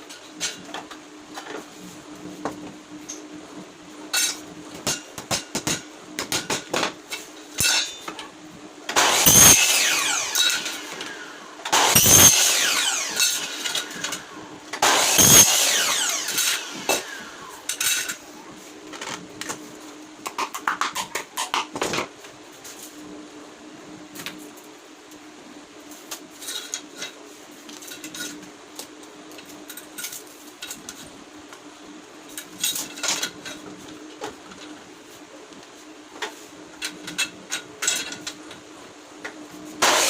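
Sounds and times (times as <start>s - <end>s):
ringing clattering bursts: 11.7s - 14.2s.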